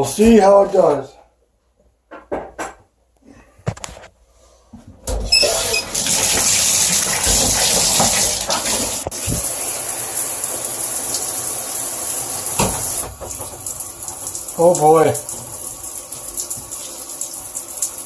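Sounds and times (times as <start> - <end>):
shower head spraying water: 5.3 - 18.0.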